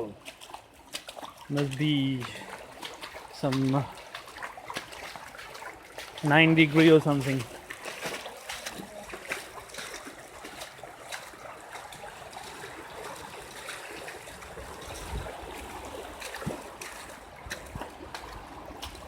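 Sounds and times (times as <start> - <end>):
floodwater rushing: 0.0 - 19.0
small water splashes: 0.0 - 19.0.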